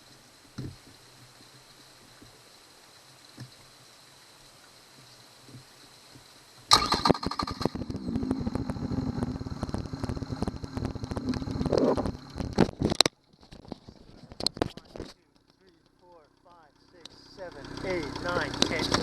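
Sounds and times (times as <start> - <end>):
outboard motor running: 5.0 - 19.0.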